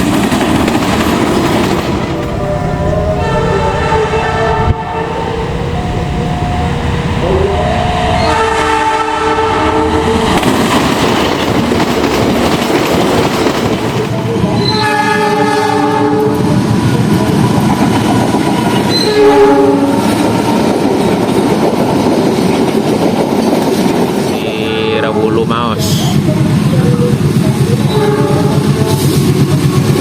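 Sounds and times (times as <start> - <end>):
train rumbling and rattling on rails: 0.0 - 30.0
locomotive horn blasts: 2.2 - 10.4, 14.5 - 16.6, 18.9 - 20.2, 27.8 - 29.1.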